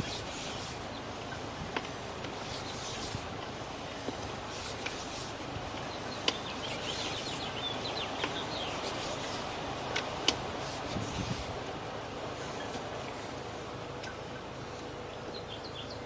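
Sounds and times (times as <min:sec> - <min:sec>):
cable rubbing and scraping in pipe: 0:00.0 - 0:00.9, 0:02.3 - 0:03.3, 0:04.4 - 0:05.5, 0:06.2 - 0:07.5, 0:08.7 - 0:09.6, 0:10.6 - 0:11.6.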